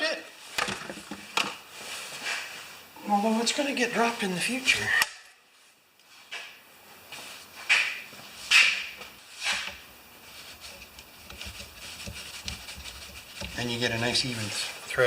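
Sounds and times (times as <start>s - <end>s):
tape rasping off roll: 8.5s - 14.2s.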